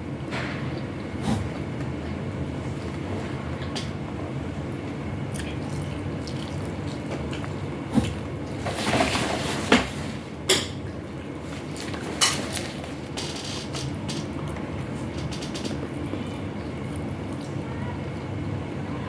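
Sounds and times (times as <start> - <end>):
steady low hum: 0.0 - 19.0
wet noisy eating: 0.6 - 19.0.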